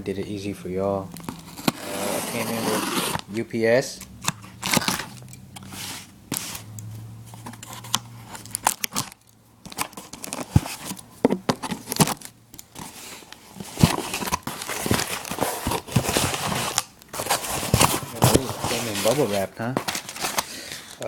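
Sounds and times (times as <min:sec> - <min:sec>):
packaging tearing and crinkling: 0:04.0 - 0:06.6, 0:07.7 - 0:11.0, 0:11.6 - 0:13.0, 0:13.6 - 0:21.0.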